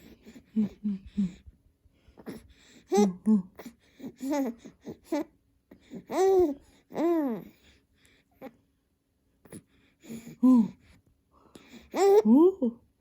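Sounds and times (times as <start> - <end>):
baby cooing: 2.9 - 7.5, 11.9 - 12.7.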